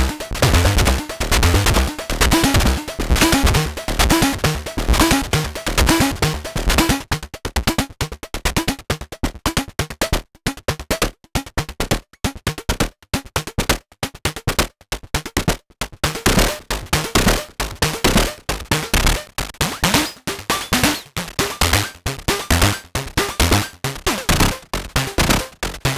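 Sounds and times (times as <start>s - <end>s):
synthesizer percussive hits: 0.0s - 7.0s, 19.0s - 24.6s.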